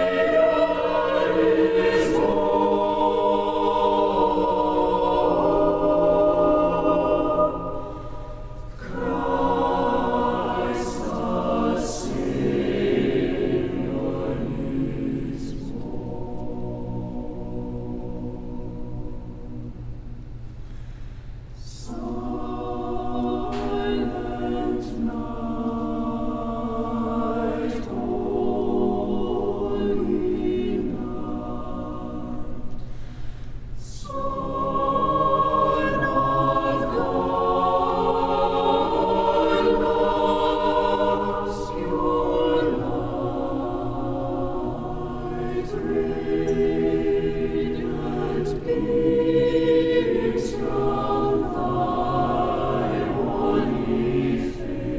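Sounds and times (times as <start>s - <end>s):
choir singing in harmony: 0.0s - 54.9s.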